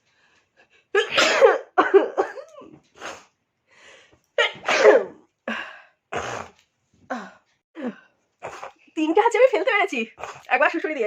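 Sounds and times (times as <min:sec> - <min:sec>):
woman sneezing: 0:01.0 - 0:01.7, 0:04.4 - 0:05.2
noisy breaths: 0:03.0 - 0:04.3.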